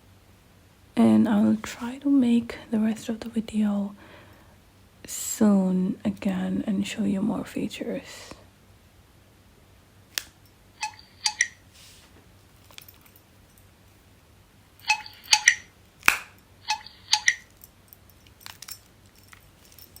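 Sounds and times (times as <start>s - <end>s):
phone key beeps: 10.8s - 11.6s, 14.8s - 15.7s, 16.7s - 17.4s.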